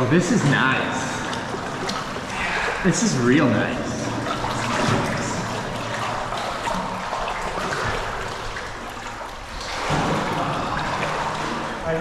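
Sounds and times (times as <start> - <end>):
water sloshing and trickling: 0.0 - 12.0.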